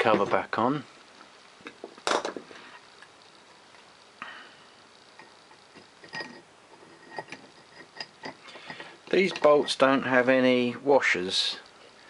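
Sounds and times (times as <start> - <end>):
metal parts scraping: 5.2 - 10.1.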